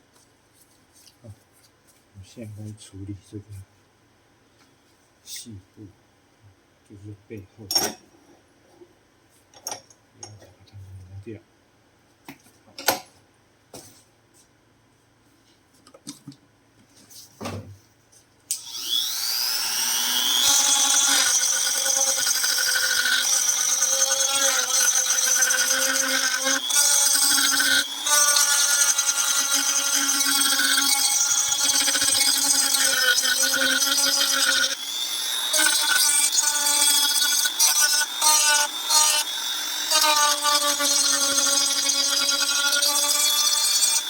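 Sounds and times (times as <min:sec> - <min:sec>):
rotary tool grinding plastic: 0:18.6 - 0:44.0.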